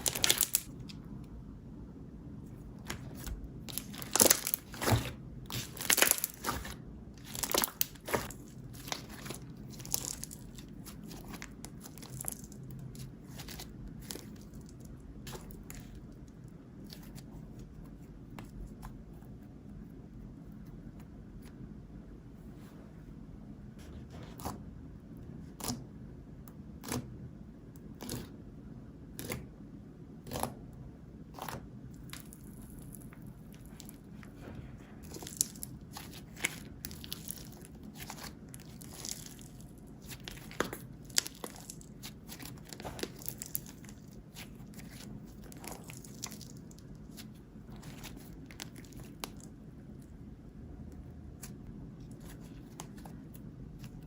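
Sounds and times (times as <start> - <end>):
slime popping and crackling: 0.0 - 0.9, 2.8 - 16.0, 35.0 - 49.6.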